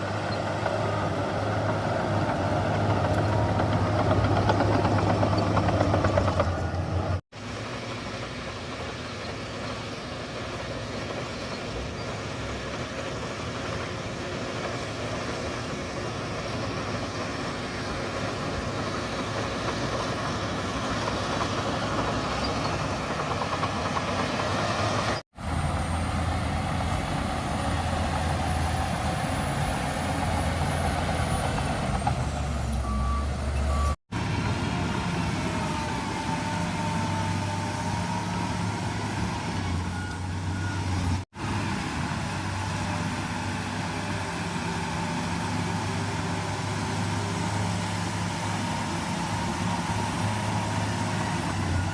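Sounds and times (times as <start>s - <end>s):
bulldozer diesel engine running: 0.0s - 51.9s
engine whining: 0.0s - 51.9s
short beeps: 32.8s - 34.0s.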